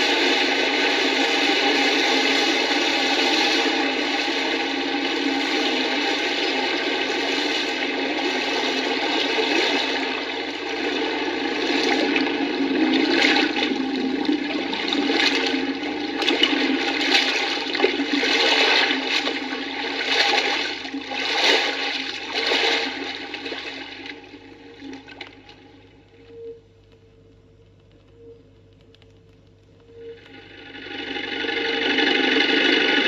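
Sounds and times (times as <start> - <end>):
rushing water surging: 0.0 - 24.1.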